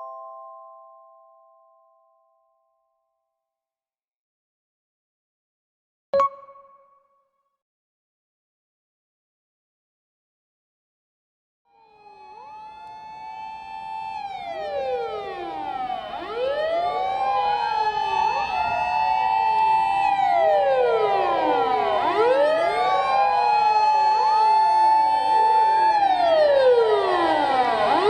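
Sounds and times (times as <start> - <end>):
steady held siren tone: 11.7 - 28.0
fire truck sirens wailing: 11.8 - 28.0.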